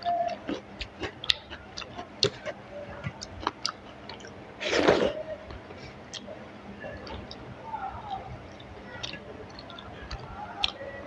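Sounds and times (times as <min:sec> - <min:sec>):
close chewing with wet clicks: 0:00.0 - 0:11.0
breathy rush: 0:04.4 - 0:11.0.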